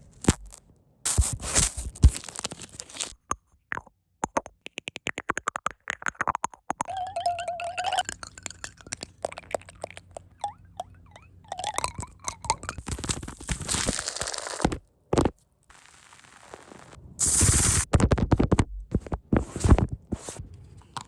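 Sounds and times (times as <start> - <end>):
crunchy scratchy noise: 0.0 - 3.2, 12.8 - 20.4
quick sharp taps and clicks: 3.3 - 6.9.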